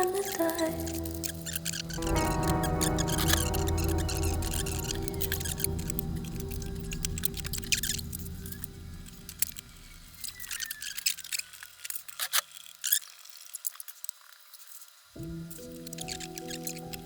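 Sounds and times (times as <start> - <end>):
background music: 0.0 - 10.6.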